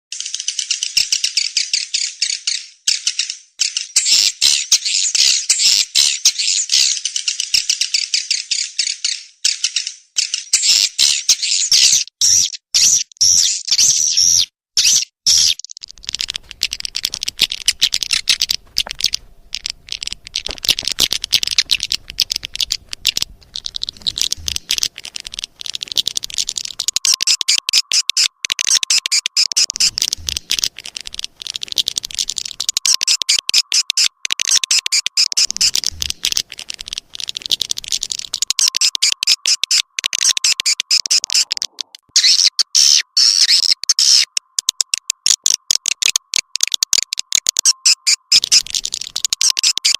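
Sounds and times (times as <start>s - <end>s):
swiftlet chirps twittering: 16.6s - 36.4s, 37.6s - 44.7s, 47.3s - 49.9s.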